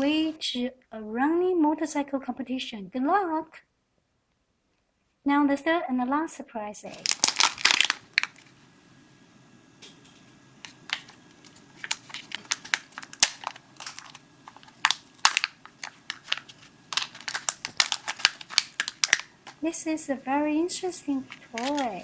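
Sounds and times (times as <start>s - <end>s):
foil wrapper crinkling: 6.9s - 8.7s, 10.6s - 19.7s, 20.8s - 22.0s.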